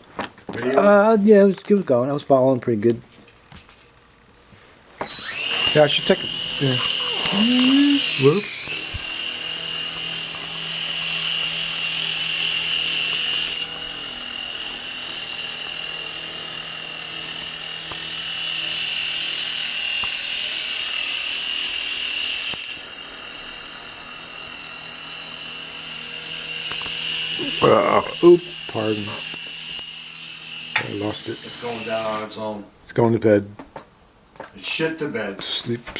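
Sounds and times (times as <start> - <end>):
toy helicopter motor whine: 5.0 - 32.3.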